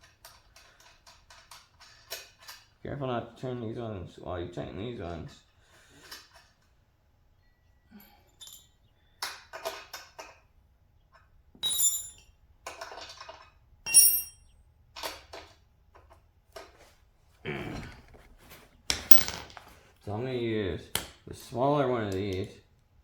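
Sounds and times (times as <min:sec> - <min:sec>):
metal hand tools clinking: 0:11.6 - 0:12.2, 0:13.9 - 0:14.5, 0:19.1 - 0:19.5.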